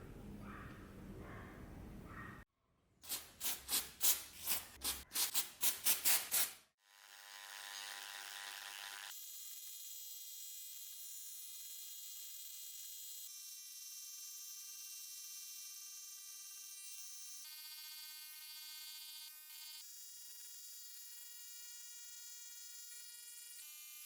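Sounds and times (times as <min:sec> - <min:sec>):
hand rubbing knife blade: 0:03.1 - 0:06.6.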